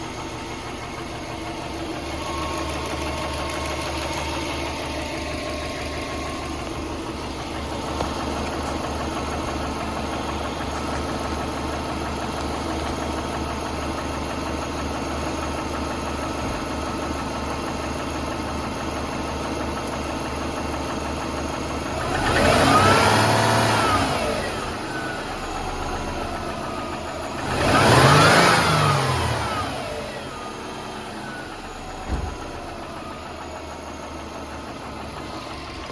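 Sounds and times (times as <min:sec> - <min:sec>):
car engine idling with ticking: 0:00.0 - 0:35.9
engine revving: 0:21.9 - 0:33.3.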